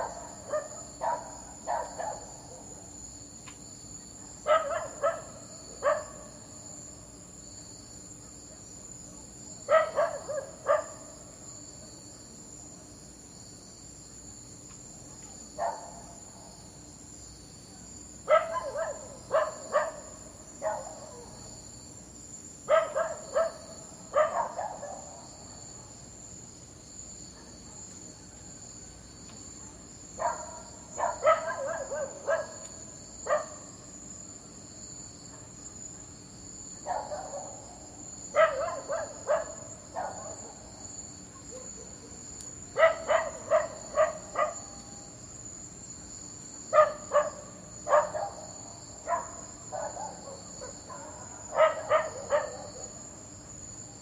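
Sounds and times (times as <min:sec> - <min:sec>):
dog barking: 0:00.0 - 0:02.7, 0:04.2 - 0:06.4, 0:09.7 - 0:11.2, 0:15.6 - 0:16.2, 0:18.3 - 0:21.5, 0:22.7 - 0:25.9, 0:27.3 - 0:27.9, 0:29.6 - 0:33.7, 0:36.8 - 0:40.7, 0:41.3 - 0:42.2, 0:42.8 - 0:44.8, 0:46.7 - 0:53.0
insects chirring: 0:00.0 - 0:54.0.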